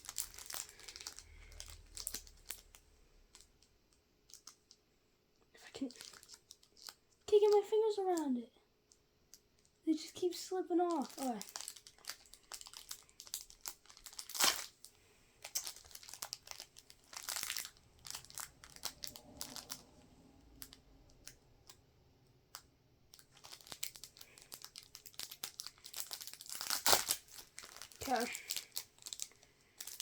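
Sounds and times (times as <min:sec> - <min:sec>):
foil wrapper tearing and crinkling: 0:00.0 - 0:03.4, 0:05.7 - 0:07.5, 0:10.8 - 0:14.8, 0:15.4 - 0:19.9, 0:23.2 - 0:30.0.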